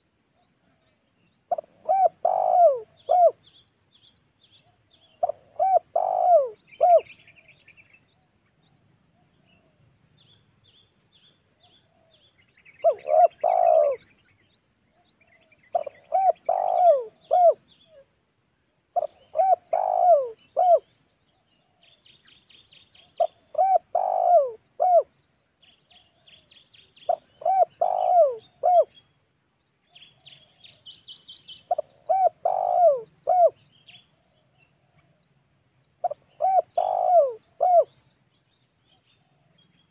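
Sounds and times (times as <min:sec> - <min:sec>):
small birds chirping: 0:00.0 - 0:39.9
dove cooing: 0:01.5 - 0:03.5, 0:05.1 - 0:07.6, 0:12.8 - 0:14.1, 0:15.0 - 0:18.0, 0:19.0 - 0:20.9, 0:23.0 - 0:25.1, 0:26.0 - 0:29.0, 0:31.6 - 0:35.2, 0:36.0 - 0:38.0.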